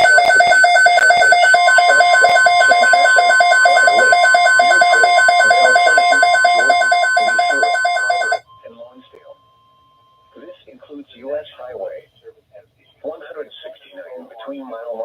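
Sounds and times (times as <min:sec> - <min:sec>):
rapid electronic beeping: 0:00.0 - 0:08.4
steady alarm tone: 0:00.0 - 0:08.4.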